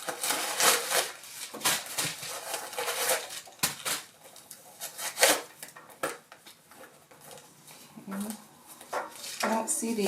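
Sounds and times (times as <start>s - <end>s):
packing stuffing rustling: 0.0s - 5.5s.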